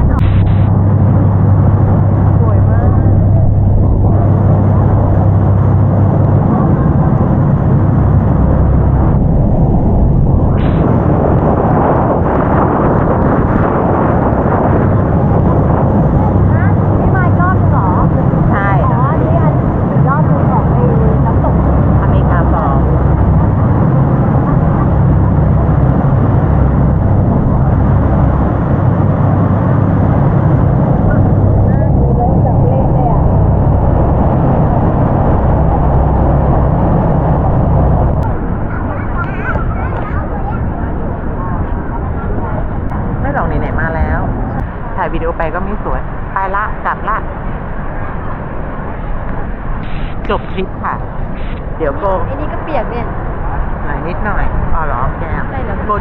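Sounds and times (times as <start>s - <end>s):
boat engine humming: 0.0s - 56.0s
wind on microphone: 0.0s - 56.0s
waterfall roaring: 10.5s - 11.5s.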